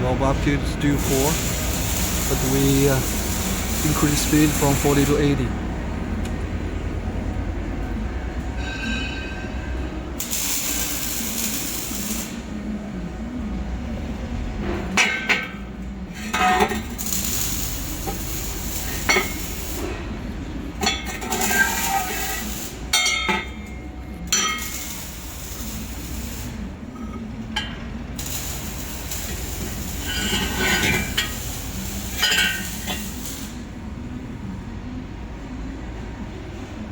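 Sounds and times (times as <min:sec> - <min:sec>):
machine low hum: 0:00.0 - 0:36.9
welding hiss: 0:00.3 - 0:05.4, 0:10.1 - 0:12.6, 0:16.3 - 0:20.0, 0:20.8 - 0:23.7, 0:24.3 - 0:26.7, 0:28.1 - 0:33.7
laser welder whine: 0:00.6 - 0:05.4, 0:10.2 - 0:13.1, 0:16.3 - 0:20.0, 0:20.8 - 0:27.3, 0:28.1 - 0:33.8.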